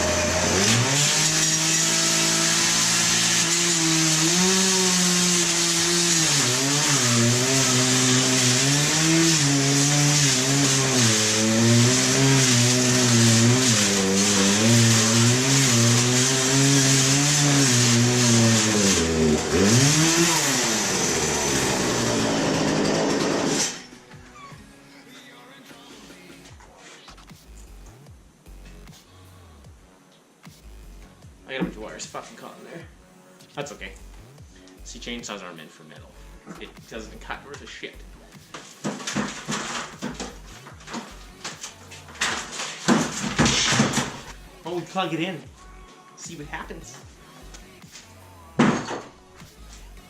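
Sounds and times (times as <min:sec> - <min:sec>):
chainsaw motor revving: 0:00.0 - 0:23.9
chain grinding on metal: 0:09.8 - 0:23.8.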